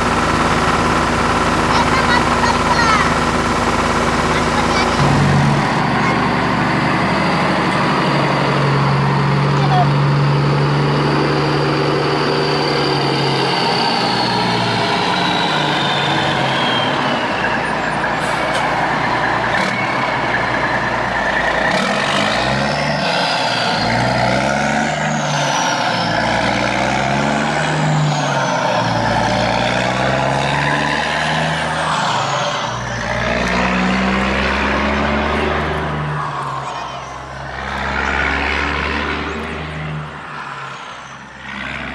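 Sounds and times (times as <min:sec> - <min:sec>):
heavy vehicle engine running: 0:00.0 - 0:41.9
high-pitched falling whines: 0:00.0 - 0:41.9.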